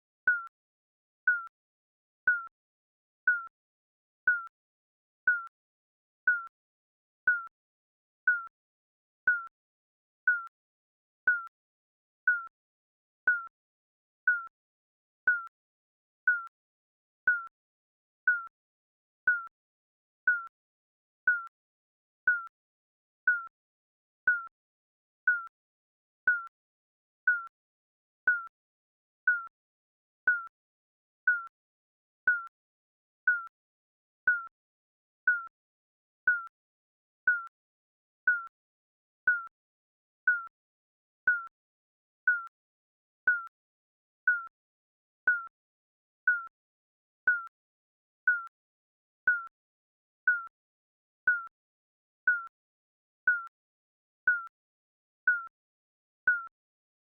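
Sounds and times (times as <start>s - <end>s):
timer beeping: 1.3s - 1.5s, 2.3s - 2.5s, 3.3s - 3.5s, 4.3s - 4.5s, 5.3s - 5.5s, 6.3s - 6.5s, 7.3s - 7.5s, 11.3s - 11.5s, 13.3s - 13.5s, 15.3s - 15.5s, 19.3s - 19.5s, 20.3s - 20.5s, 21.3s - 21.5s, 23.3s - 23.5s, 25.3s - 25.5s, 28.3s - 28.5s, 29.3s - 29.5s, 30.3s - 30.5s, 33.3s - 33.5s, 35.3s - 35.5s, 36.3s - 36.5s, 37.3s - 37.5s, 38.3s - 38.5s, 39.3s - 39.5s, 40.3s - 40.5s, 45.3s - 45.5s, 47.3s - 47.5s, 52.3s - 52.5s.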